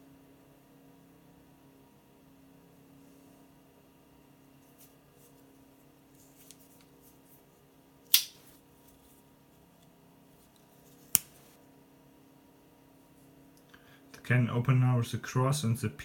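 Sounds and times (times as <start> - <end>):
knife tool snapping shut: 8.1 - 8.4.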